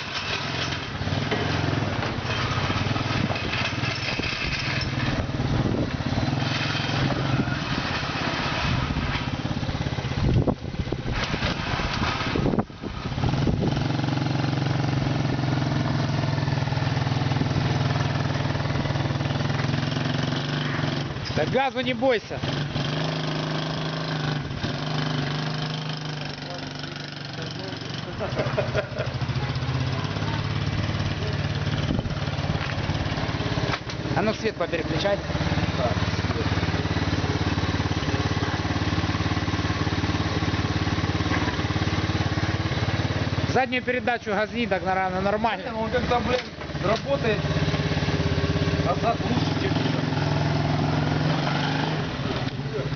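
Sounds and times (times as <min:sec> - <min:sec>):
quad engine idling: 0:24.8 - 0:50.5.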